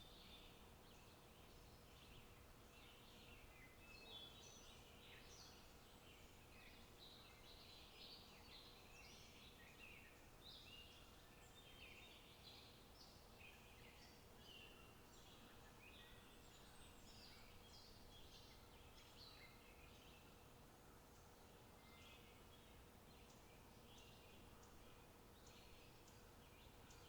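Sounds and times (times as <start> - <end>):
small birds chirping: 21.2 - 27.0.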